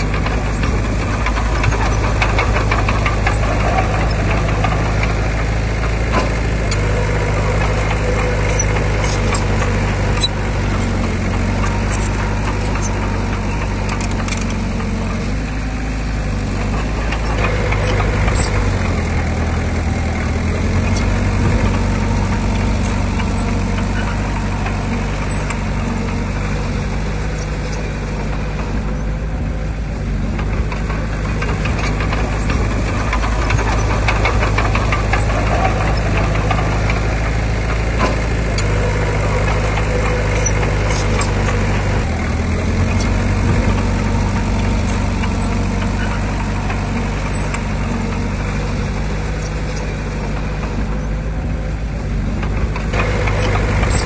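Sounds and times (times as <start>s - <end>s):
sharp metallic clicks and clanks: 0.0s - 28.9s, 30.3s - 51.0s, 52.4s - 54.0s
diesel engine running: 0.0s - 54.0s.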